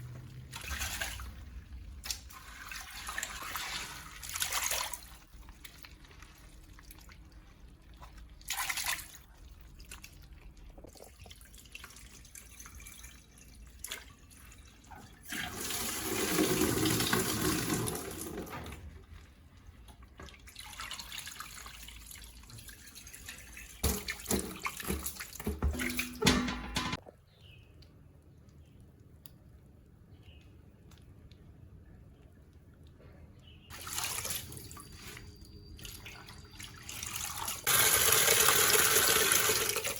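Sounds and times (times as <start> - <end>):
water splashing into a basin: 0.1 - 18.8, 20.0 - 27.0, 33.7 - 39.9.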